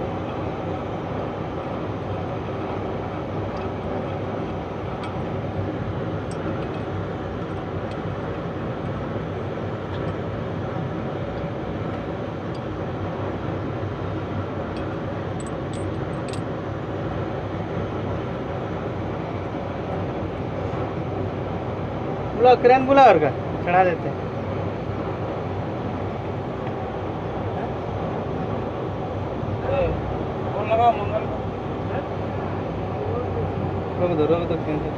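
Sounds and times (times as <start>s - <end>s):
heavy machinery engine running: 0.0s - 22.4s.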